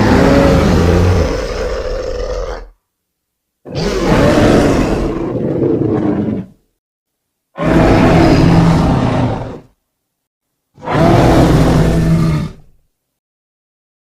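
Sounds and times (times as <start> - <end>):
deep creature roar: 0.0 - 2.7, 3.7 - 6.6, 7.6 - 9.8, 10.8 - 12.8.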